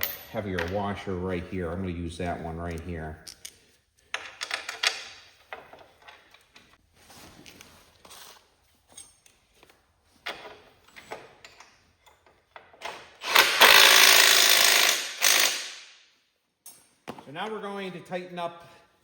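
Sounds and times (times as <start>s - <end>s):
power tool spinning nut: 13.2s - 15.8s.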